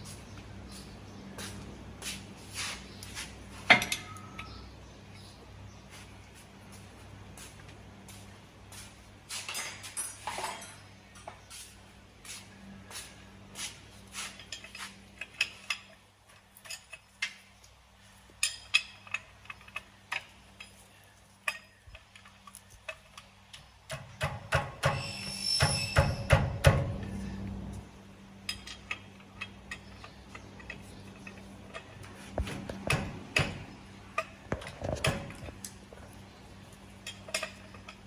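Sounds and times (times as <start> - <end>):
hand tools tapping car parts: 23.6 - 27.2, 28.5 - 36.2
steady low hum: 25.1 - 38.0.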